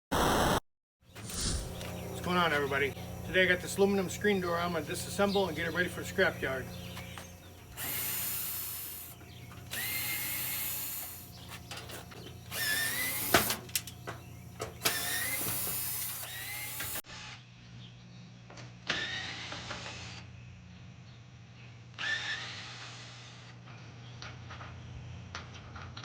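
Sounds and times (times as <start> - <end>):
power drill whining: 1.2 - 17.3.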